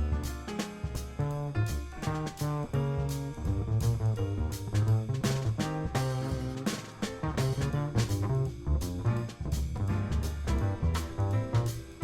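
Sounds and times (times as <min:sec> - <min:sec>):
jazzy guitar instrumental: 0:09.8 - 0:12.0.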